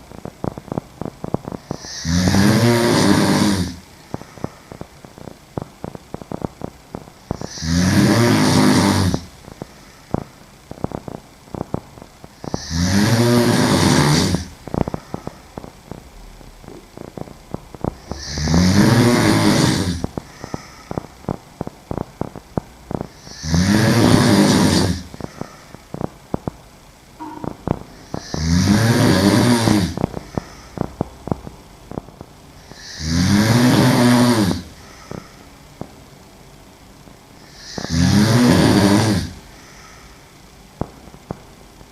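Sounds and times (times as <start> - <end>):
woman snoring: 1.5 - 5.3, 7.3 - 9.4, 12.4 - 15.4, 16.7 - 21.1, 23.0 - 25.6, 27.2 - 30.9, 32.6 - 35.3, 37.4 - 39.5.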